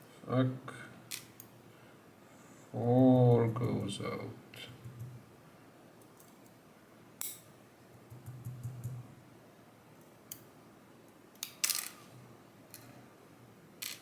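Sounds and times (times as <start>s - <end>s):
small metal lock parts clicking: 11.4s - 12.0s, 13.8s - 14.0s.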